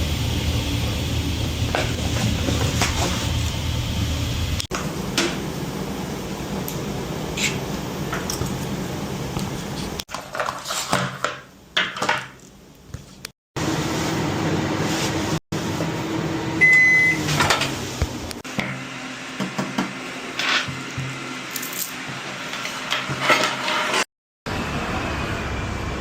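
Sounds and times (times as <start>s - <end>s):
microwave oven humming: 0.0s - 10.0s, 15.6s - 22.5s
knocks and clatters of handling: 9.8s - 13.2s
short high beep: 16.6s - 17.2s.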